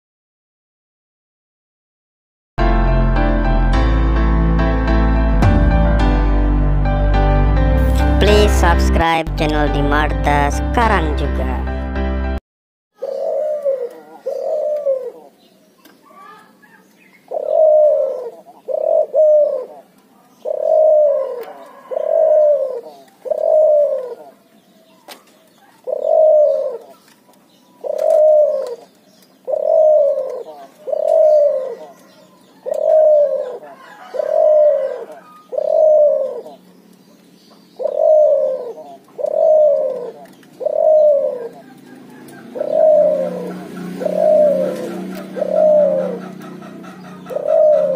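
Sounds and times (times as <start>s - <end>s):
dove cooing: 13.0s - 36.8s, 37.4s - 47.9s.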